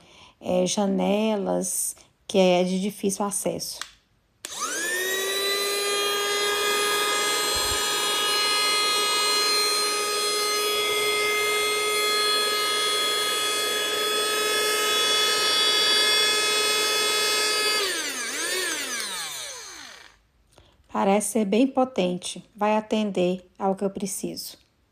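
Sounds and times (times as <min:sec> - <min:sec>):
handheld vacuum cleaner whining: 0:04.4 - 0:20.2.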